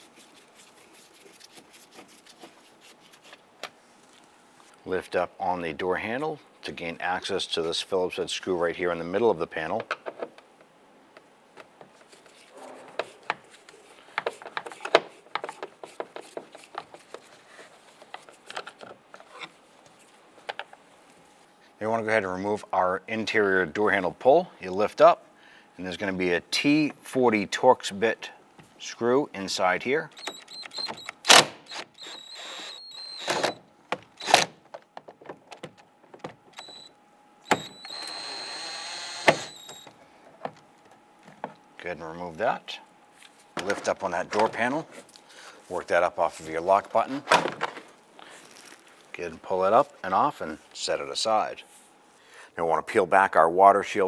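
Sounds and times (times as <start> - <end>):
cordless power driver whirring: 30.2 - 33.6, 34.2 - 34.6, 36.6 - 39.9.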